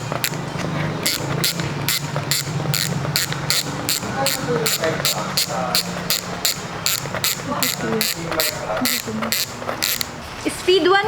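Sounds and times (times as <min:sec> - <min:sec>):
bicycle hub ratchet clicking: 0:00.0 - 0:10.4.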